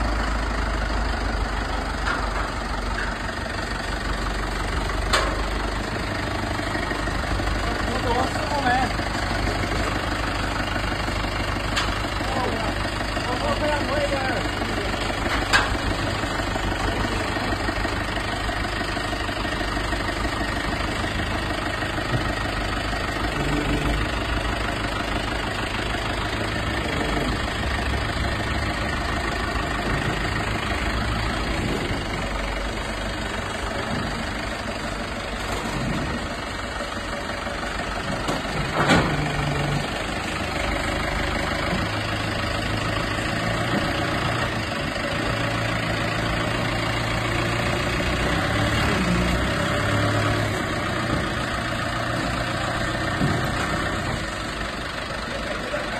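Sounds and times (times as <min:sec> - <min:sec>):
loader engine running: 0:00.0 - 0:55.9.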